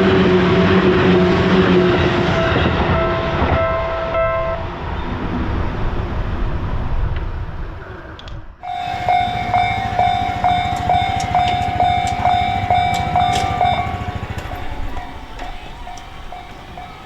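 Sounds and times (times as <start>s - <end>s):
passing train rumble: 0.0s - 17.0s
level crossing warning bell: 8.6s - 17.0s.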